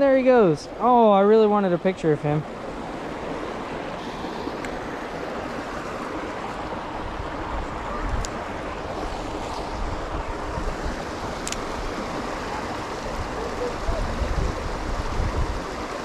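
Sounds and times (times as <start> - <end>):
flowing creek water: 0.0 - 16.0
wind on microphone: 2.5 - 16.0
faint click: 11.4 - 11.6.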